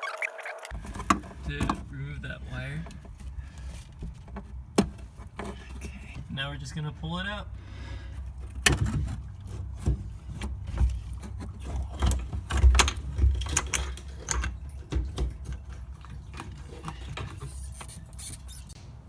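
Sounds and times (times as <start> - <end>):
metal parts clicking and knocking: 11.9 - 18.3.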